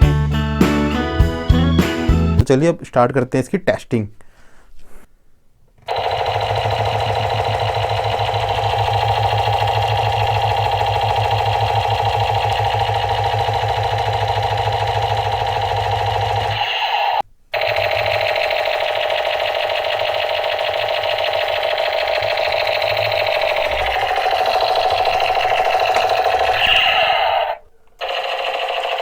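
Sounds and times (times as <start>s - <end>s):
toy machine gun rattling: 5.9s - 29.0s.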